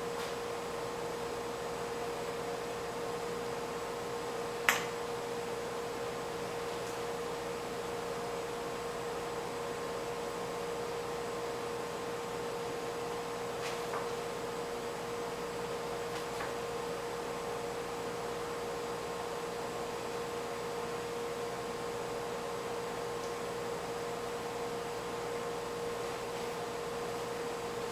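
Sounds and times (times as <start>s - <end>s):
steady electrical hum: 0.0s - 27.9s.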